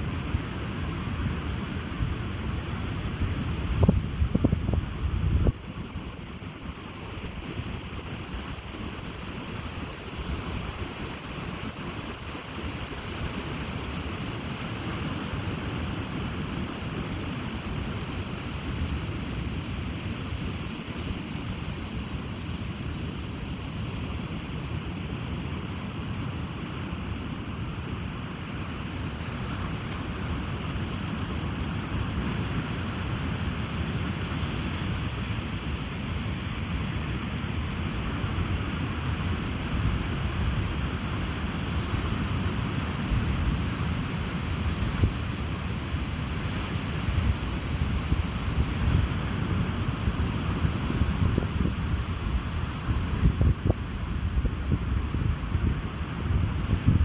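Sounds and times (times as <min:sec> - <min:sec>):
ocean surf washing on beach: 0:00.0 - 0:57.0
wind buffeting microphone: 0:03.0 - 0:22.1, 0:37.7 - 0:57.0.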